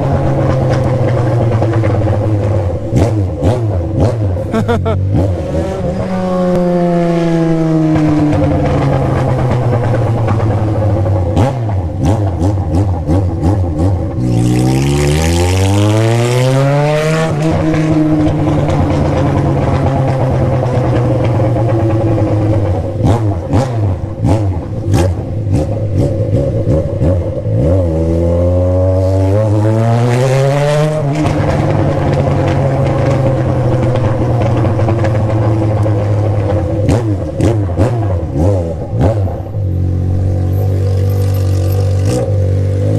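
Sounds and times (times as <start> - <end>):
motorcycle engine revving: 0.0 - 42.9
sharp clicks and pops: 31.1 - 39.6.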